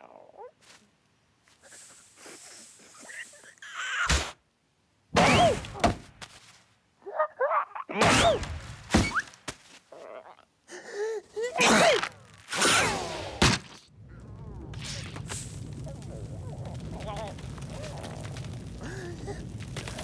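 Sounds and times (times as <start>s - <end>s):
hard thunk: 5.2s - 6.3s.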